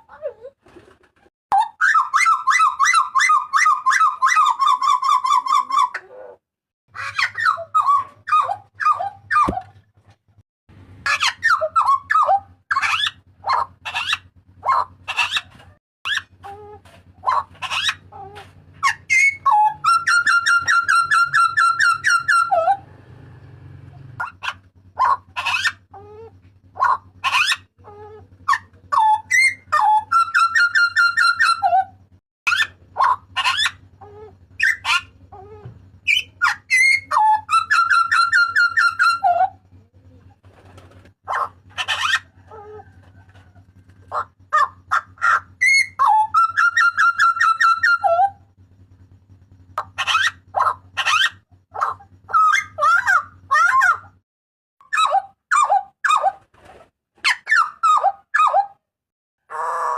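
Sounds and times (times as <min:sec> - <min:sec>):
bird whistled calls: 0:18.8 - 0:22.8, 0:34.6 - 0:35.1, 0:44.9 - 0:48.4.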